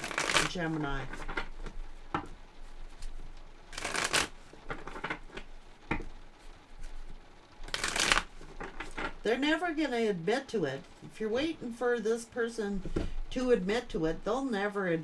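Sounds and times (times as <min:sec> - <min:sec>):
cards being shuffled: 0:00.0 - 0:09.3
card taps and flicks: 0:03.8 - 0:06.2.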